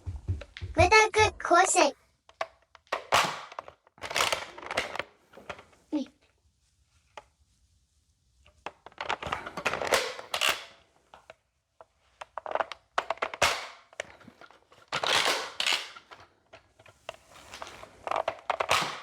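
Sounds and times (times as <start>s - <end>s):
toy blaster clicks and knocks: 2.3s - 5.6s, 8.7s - 11.4s, 12.2s - 19.0s
rustling: 3.7s - 19.0s.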